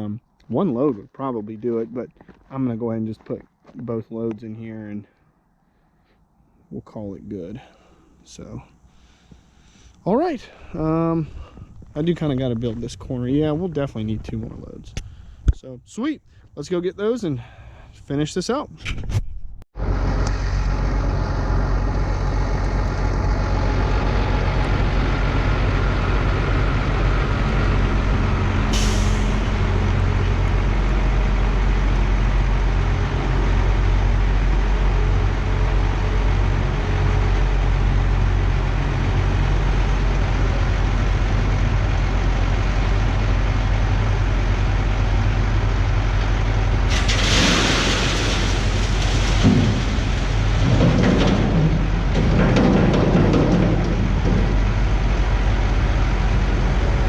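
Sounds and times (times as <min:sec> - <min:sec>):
diesel truck engine running: 0:19.8 - 0:57.0.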